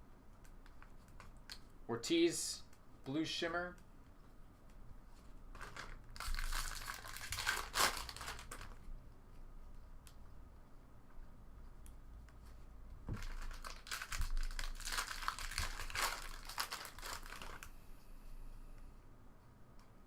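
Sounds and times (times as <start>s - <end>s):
plastic wrapper crinkling: 5.5s - 8.9s, 13.1s - 17.8s.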